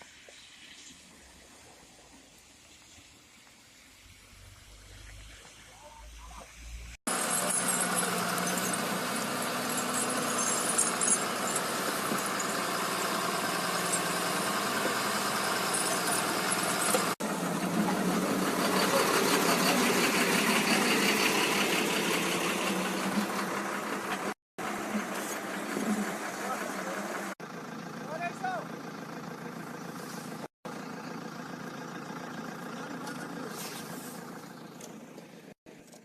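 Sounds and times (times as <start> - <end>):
engine running steadily: 7.1 - 36.0.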